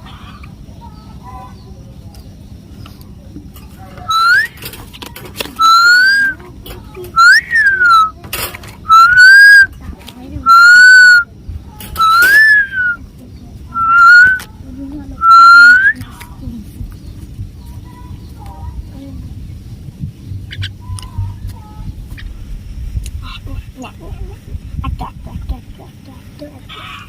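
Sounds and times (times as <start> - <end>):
loud whistled notes: 4.1 - 4.6, 5.6 - 6.4, 7.2 - 8.1, 8.9 - 9.7, 10.5 - 11.3, 12.0 - 13.0, 13.8 - 14.4, 15.2 - 16.0.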